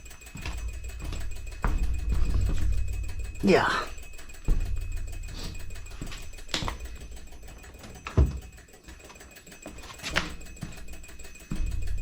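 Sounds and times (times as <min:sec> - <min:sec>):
low steady hum: 0:00.0 - 0:09.1.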